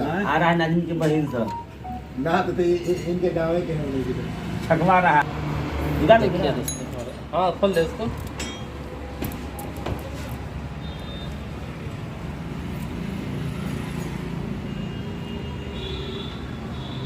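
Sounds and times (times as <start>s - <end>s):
road traffic noise: 0.0s - 17.0s.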